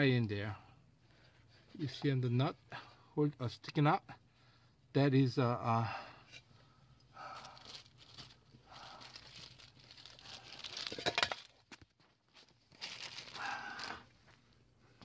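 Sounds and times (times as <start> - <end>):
rustling crinkling handling: 7.2 - 15.0.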